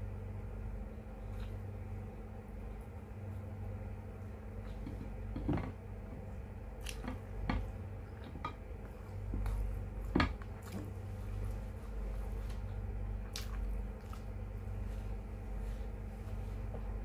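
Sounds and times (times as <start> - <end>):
steady low hum: 0.0 - 17.0
wet chewing and mouth smacks: 12.4 - 14.9.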